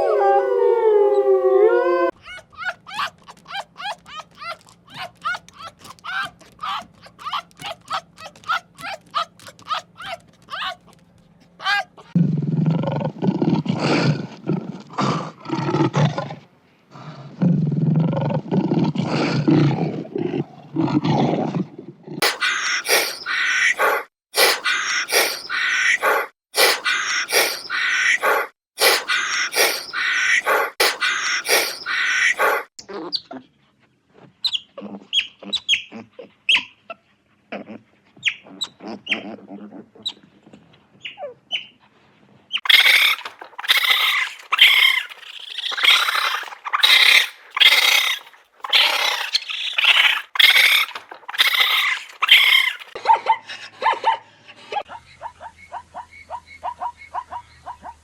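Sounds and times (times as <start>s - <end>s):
harsh pulsing animal calls: 22.2s - 32.7s, 42.6s - 53.0s.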